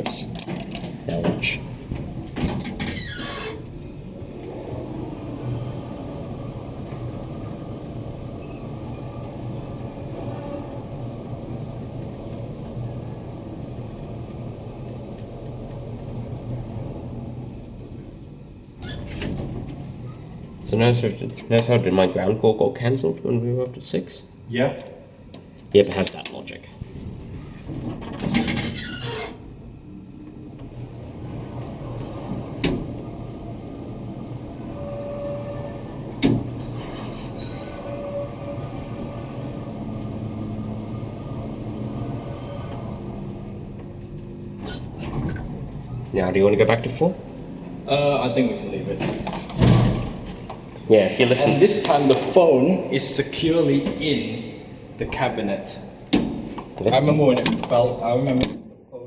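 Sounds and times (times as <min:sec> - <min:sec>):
elevator mechanical rattle: 0:00.0 - 0:22.0
elevator rumble and hum: 0:00.0 - 0:22.5, 0:26.7 - 0:58.2.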